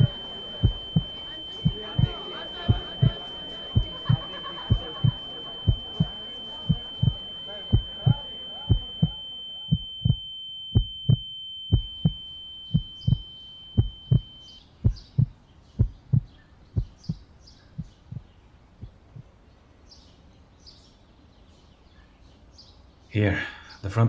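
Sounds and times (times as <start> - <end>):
high ringing tone: 0.0 - 14.7
heartbeat thumps: 0.0 - 19.4
birds chirping: 0.0 - 24.0.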